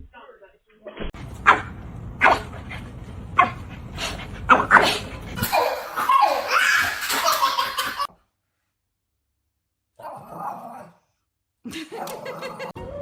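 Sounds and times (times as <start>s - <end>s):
person laughing: 11.7s - 12.9s.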